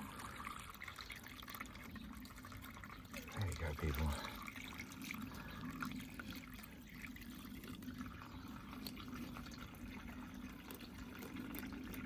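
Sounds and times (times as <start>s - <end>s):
water trickling: 0.0s - 12.0s.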